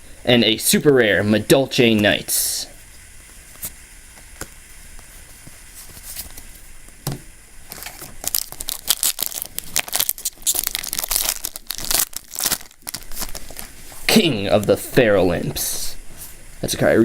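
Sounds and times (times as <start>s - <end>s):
foil pack tearing and crinkling: 7.7s - 13.8s.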